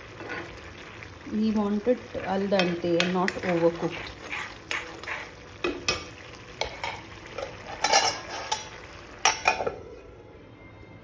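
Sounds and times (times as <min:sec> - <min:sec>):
spoon scraping a pan: 0:00.0 - 0:00.9, 0:02.5 - 0:09.8
faint sizzle: 0:00.0 - 0:11.0.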